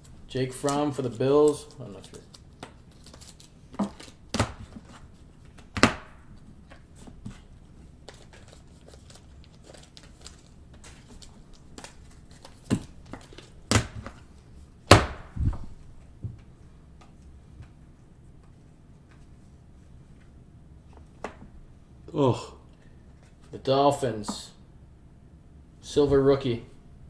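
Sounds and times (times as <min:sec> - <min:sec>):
cards tapping on a table: 0:03.8 - 0:05.0, 0:05.6 - 0:07.4, 0:12.7 - 0:14.2.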